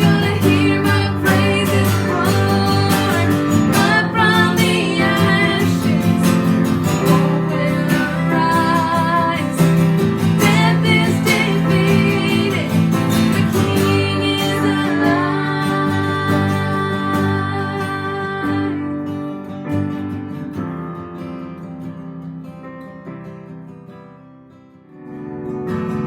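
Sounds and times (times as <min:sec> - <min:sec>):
person singing: 0:00.0 - 0:19.1
acoustic guitar strumming: 0:00.0 - 0:26.0.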